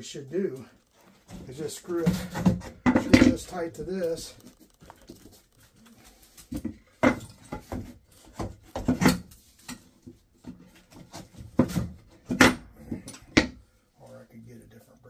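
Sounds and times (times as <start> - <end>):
wood and metal parts knocking: 1.1 - 5.0, 6.5 - 13.6.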